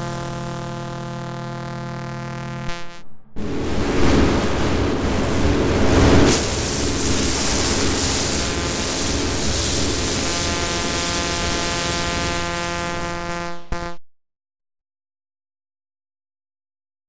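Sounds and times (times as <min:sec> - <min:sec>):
buzzing electronic tones: 0:00.0 - 0:03.4, 0:06.3 - 0:14.0
loud synthesized hiss: 0:03.4 - 0:13.7.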